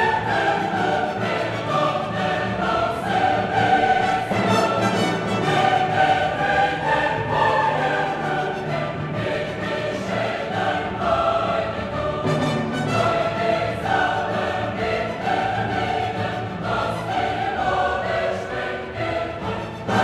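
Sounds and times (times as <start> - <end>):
orchestra playing: 0.0 - 10.8, 11.5 - 17.5
choir singing held notes: 0.0 - 20.0.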